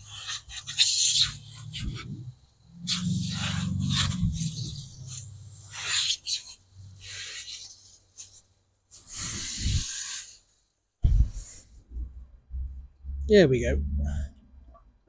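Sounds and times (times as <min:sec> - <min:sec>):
hose spraying water hiss: 0:02.8 - 0:10.5.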